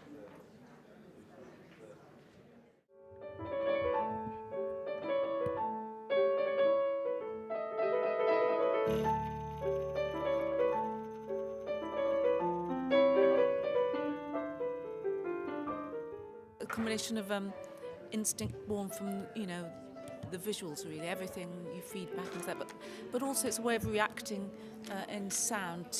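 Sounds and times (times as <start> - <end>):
repeating piano pattern: 7.6 - 16.6.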